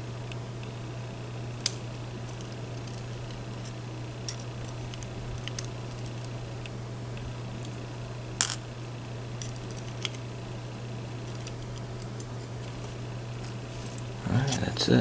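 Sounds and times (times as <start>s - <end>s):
steady low hum: 0.0s - 15.0s
light clicks of small parts: 1.6s - 7.8s, 9.4s - 10.3s, 11.2s - 14.1s.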